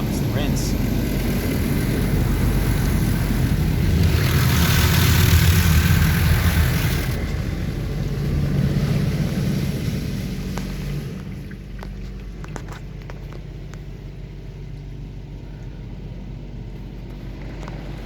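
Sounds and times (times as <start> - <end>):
car wash spray hissing on car: 0.0 - 13.0
steady low rumble: 0.0 - 18.0.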